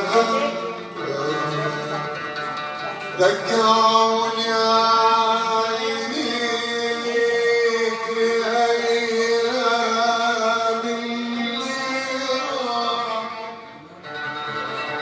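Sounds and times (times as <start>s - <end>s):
instrumental accompaniment: 0.0s - 15.0s.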